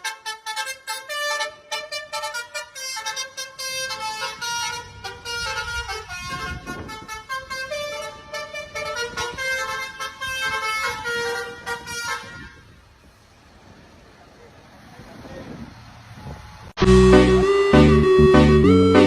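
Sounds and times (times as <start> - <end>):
multi-tone musical bus horn: 0.0 - 12.8, 16.8 - 19.0.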